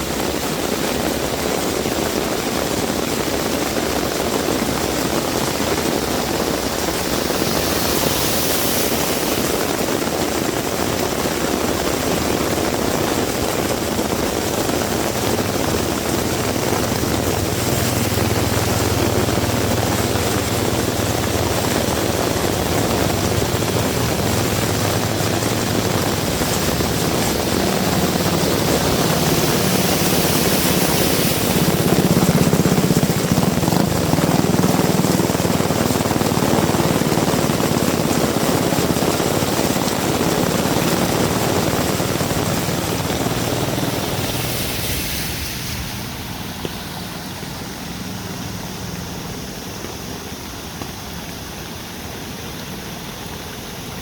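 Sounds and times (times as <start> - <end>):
heavy rain pouring: 0.0 - 54.0
vehicle engine hum: 0.0 - 54.0.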